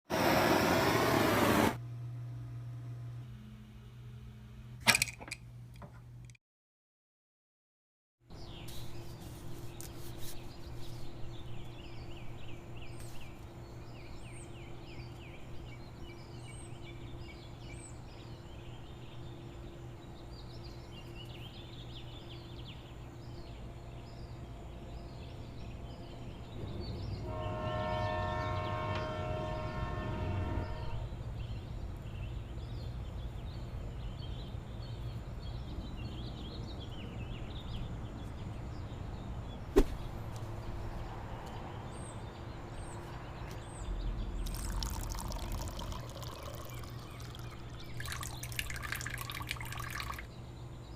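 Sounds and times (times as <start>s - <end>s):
small birds chirping: 8.3s - 27.2s, 30.8s - 50.9s
distant horn: 27.1s - 31.2s
low rumble: 43.7s - 44.7s.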